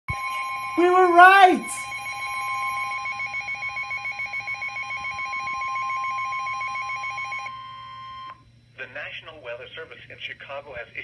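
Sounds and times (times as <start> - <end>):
steady high alarm tone: 0.1 - 8.4.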